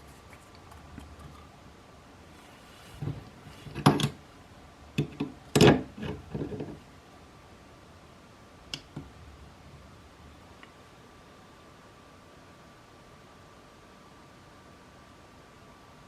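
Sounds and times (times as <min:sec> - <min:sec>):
hard objects knocking: 0:03.0 - 0:04.2.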